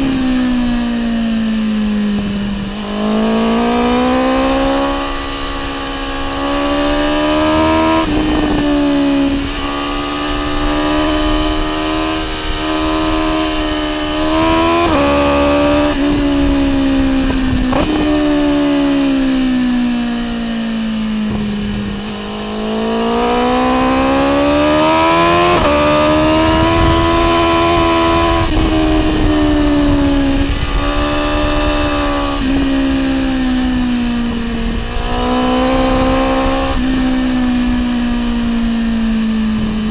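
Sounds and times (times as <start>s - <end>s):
motorcycle engine under throttle: 0.0s - 39.9s.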